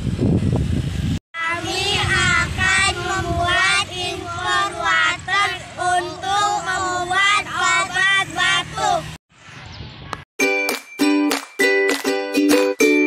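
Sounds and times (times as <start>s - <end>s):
child singing: 1.4s - 9.2s.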